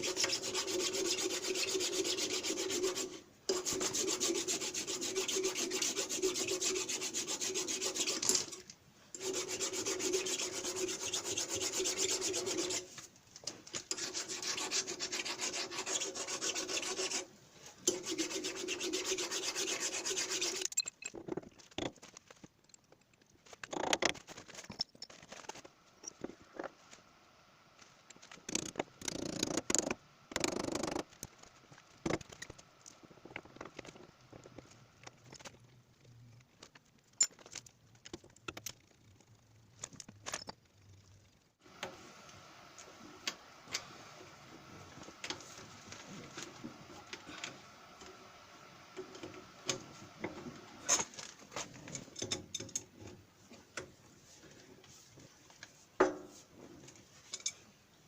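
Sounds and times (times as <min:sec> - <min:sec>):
metal parts and tools clinking: 0:20.6 - 0:25.4, 0:37.1 - 0:38.6, 0:39.8 - 0:40.6, 0:57.2 - 0:57.6.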